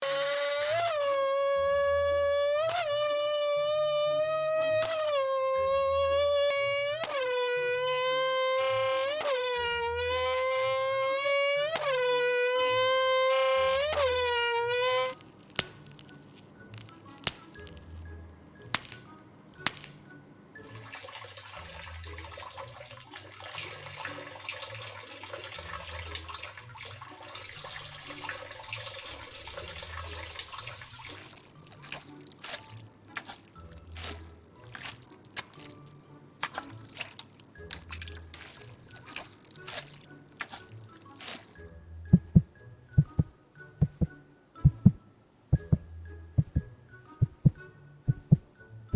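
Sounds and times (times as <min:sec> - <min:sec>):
music with slow deep pulse: 0:41.7 - 0:48.9
clicks and taps: 0:42.2 - 0:45.0, 0:45.6 - 0:48.5.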